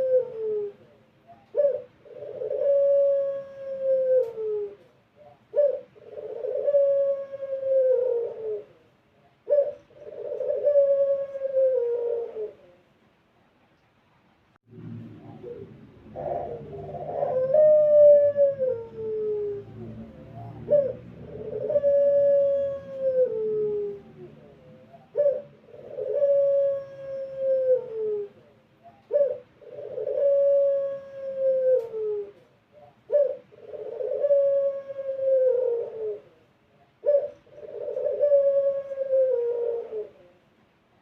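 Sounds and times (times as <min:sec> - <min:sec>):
dove cooing: 0:00.0 - 0:12.9, 0:15.0 - 0:40.5.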